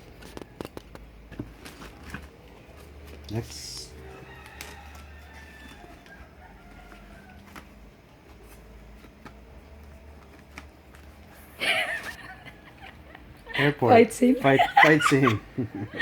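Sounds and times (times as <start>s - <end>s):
faint rooster crowing: 3.7s - 8.6s.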